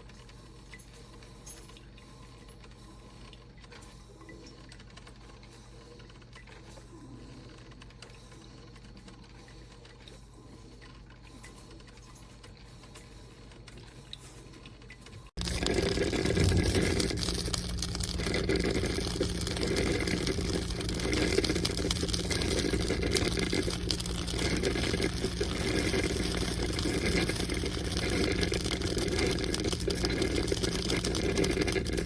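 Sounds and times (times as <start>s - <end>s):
coffee maker gurgling and hissing: 15.2s - 32.0s
low steady hum: 15.4s - 32.0s.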